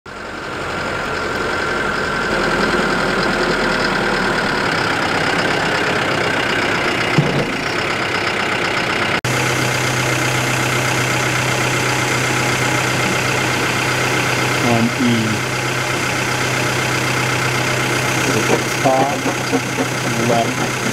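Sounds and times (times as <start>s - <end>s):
engine running steadily: 0.1s - 20.9s
steady low hum: 18.1s - 20.9s.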